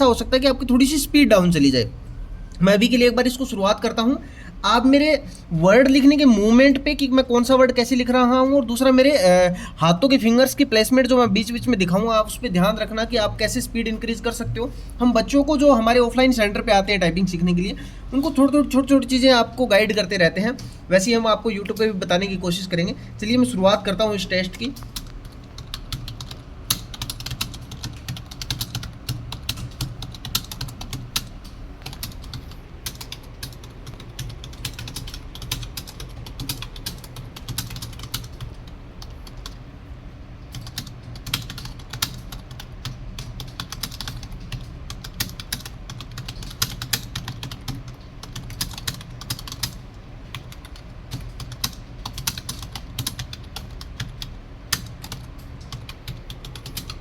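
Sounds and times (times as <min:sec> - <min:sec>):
steady low hum: 0:00.0 - 0:57.0
fast typing on keyboard: 0:17.6 - 0:39.6, 0:40.5 - 0:57.0.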